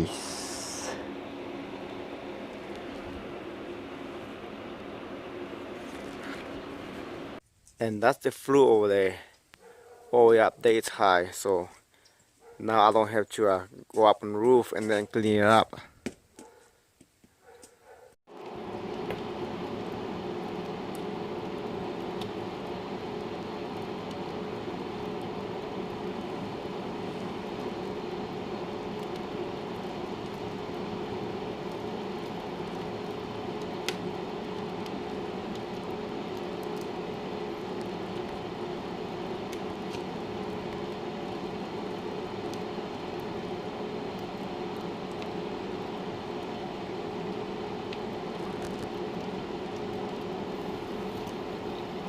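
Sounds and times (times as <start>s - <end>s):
mechanical hum with rushing: 0.0s - 7.4s, 18.3s - 52.0s.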